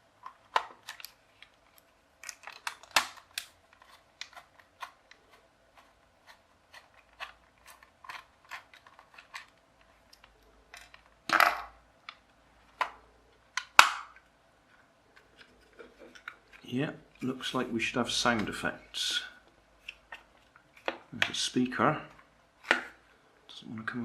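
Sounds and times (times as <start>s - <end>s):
plastic scraping: 0.2s - 11.1s
plastic parts clicking and tapping: 0.2s - 14.3s, 15.1s - 16.7s.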